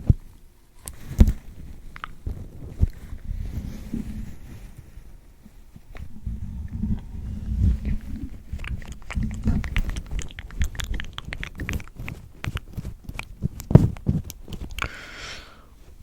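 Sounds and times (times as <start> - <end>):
wet lip smacks and tongue clicks: 1.9 - 3.0, 7.9 - 15.0
breathy hiss: 14.8 - 15.9.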